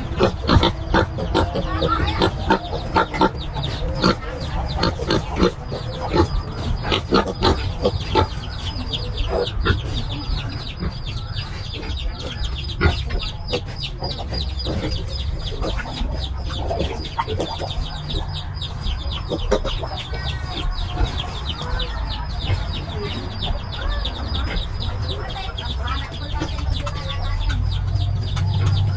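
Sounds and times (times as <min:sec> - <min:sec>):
farm animals calling: 0:00.0 - 0:28.9.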